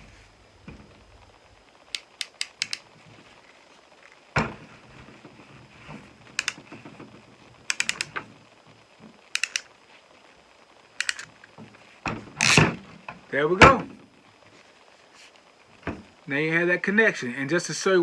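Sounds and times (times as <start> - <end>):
clamp tool metallic clicks: 1.9 - 2.8, 7.7 - 8.1, 9.4 - 9.7, 11.0 - 11.3.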